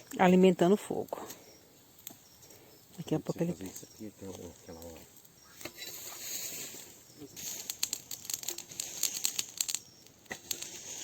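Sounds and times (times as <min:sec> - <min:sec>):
campfire crackling: 0:00.0 - 0:11.0
wood popping and snapping: 0:07.4 - 0:11.0.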